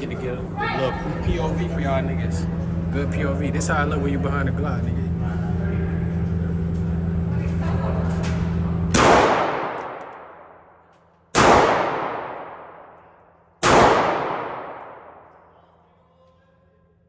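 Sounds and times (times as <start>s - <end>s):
steady hum: 0.0s - 15.6s
pistol shots: 8.9s - 10.7s, 11.3s - 15.5s.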